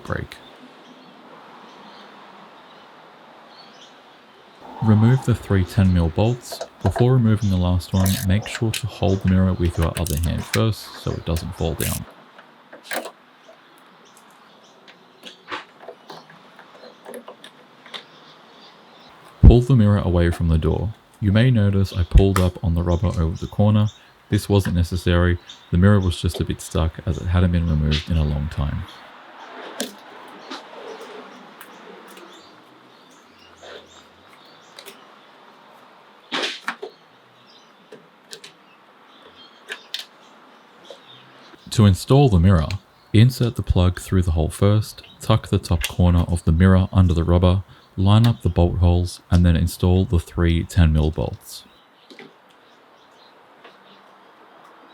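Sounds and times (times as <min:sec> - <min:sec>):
hand ratchet clicking: 0:08.0 - 0:08.4, 0:09.8 - 0:10.6, 0:11.8 - 0:12.0.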